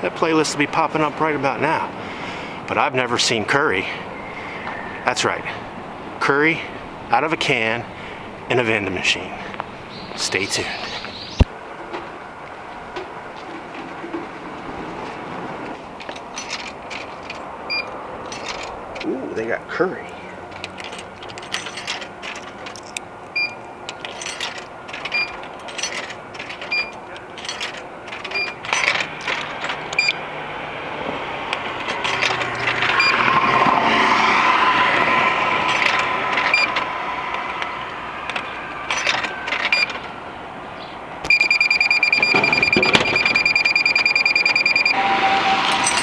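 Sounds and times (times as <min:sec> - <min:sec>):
traffic noise: 0:00.0 - 0:46.0
loud steady electronic tone: 0:35.7 - 0:38.0, 0:41.3 - 0:46.0
short high electronic beeps: 0:41.3 - 0:46.0.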